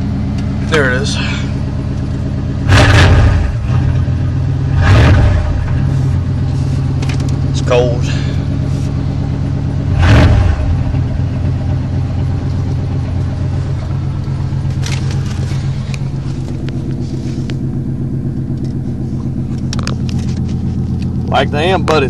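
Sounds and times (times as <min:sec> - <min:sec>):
pickup truck idling: 0:00.0 - 0:22.0
loud exhaust burst: 0:02.6 - 0:04.1, 0:04.7 - 0:05.9, 0:09.9 - 0:11.5.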